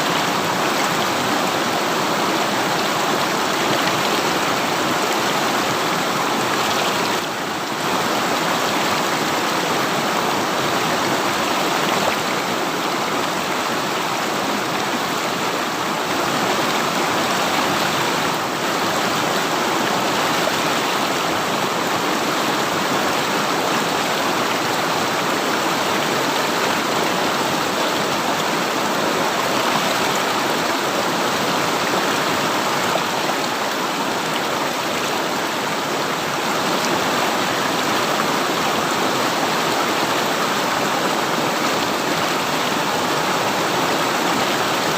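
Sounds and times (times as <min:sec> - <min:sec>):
river water rushing over rocks: 0:00.0 - 0:44.9.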